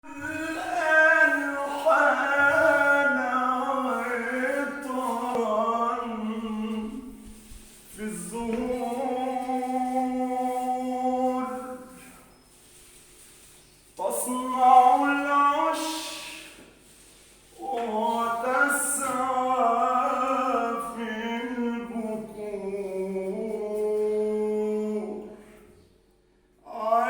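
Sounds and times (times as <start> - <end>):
man singing a devotional chant: 0.0 - 12.2, 14.0 - 16.7, 17.5 - 25.7, 26.6 - 27.0.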